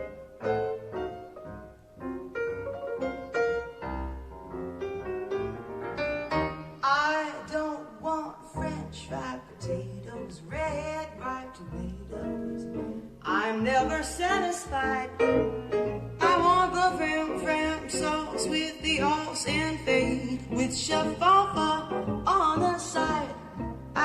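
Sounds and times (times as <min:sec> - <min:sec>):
jazz piano: 0:00.0 - 0:24.0
person singing: 0:06.8 - 0:15.4, 0:16.2 - 0:24.0.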